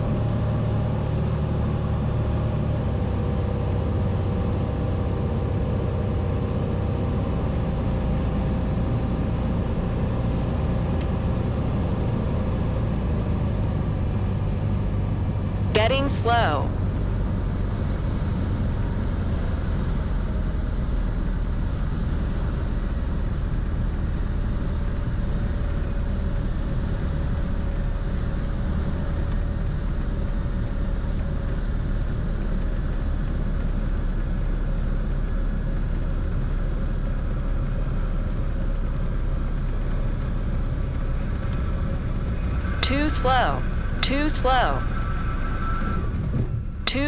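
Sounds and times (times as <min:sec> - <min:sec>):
aircraft piston engine and propeller drone: 0:00.0 - 0:47.0
faint steady hum: 0:15.6 - 0:17.2, 0:42.5 - 0:45.1.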